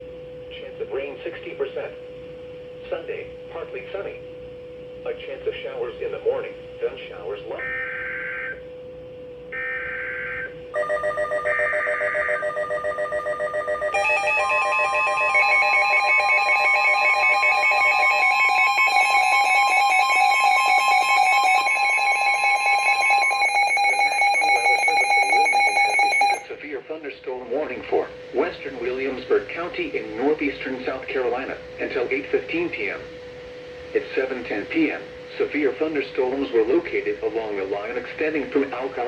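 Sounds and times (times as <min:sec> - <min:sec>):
steady warning tone: 0:00.0 - 0:39.0
warbling digital data screech: 0:09.5 - 0:26.4
fast pulsing alarm beeps: 0:09.5 - 0:26.6.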